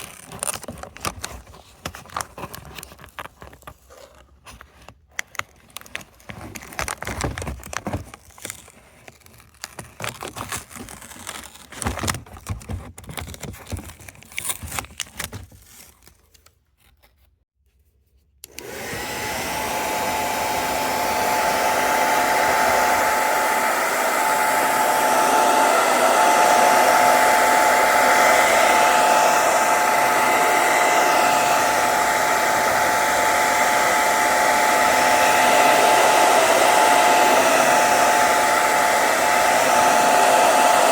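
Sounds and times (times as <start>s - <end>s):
clicks and scrapes of handling: 0.0s - 18.6s
hair dryer running: 18.4s - 40.9s.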